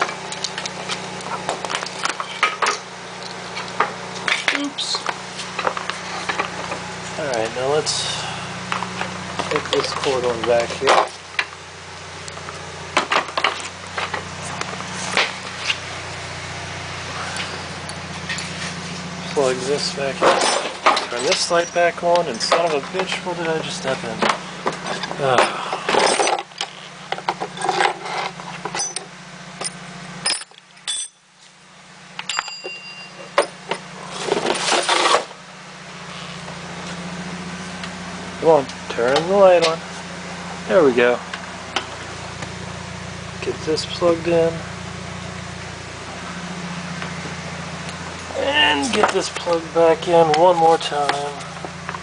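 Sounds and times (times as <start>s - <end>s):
car engine idling: 0.0s - 52.0s
handling knocks and clatters: 8.7s - 11.6s, 17.3s - 31.2s, 32.2s - 35.4s
handling noise with metallic clinks: 24.7s - 31.6s, 32.2s - 34.0s
short ringing clink: 29.6s - 31.3s, 32.2s - 33.6s.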